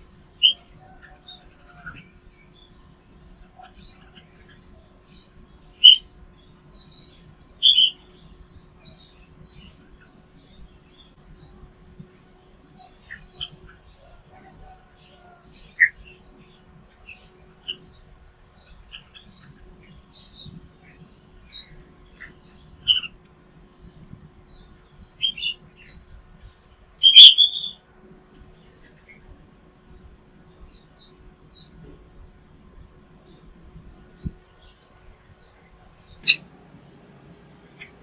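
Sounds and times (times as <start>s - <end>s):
small songbirds chirping: 0.0s - 38.0s
sharp bird call: 27.0s - 27.8s.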